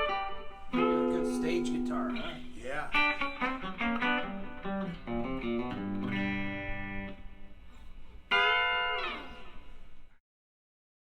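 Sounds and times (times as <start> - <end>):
sharp guitar chord strum: 0.0 - 7.1
guitar chord ringing: 0.0 - 7.5, 8.3 - 9.6.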